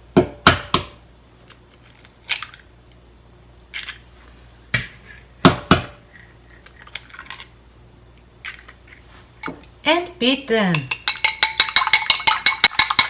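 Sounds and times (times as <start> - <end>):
eggshells cracking: 1.4 - 2.7, 6.1 - 7.5.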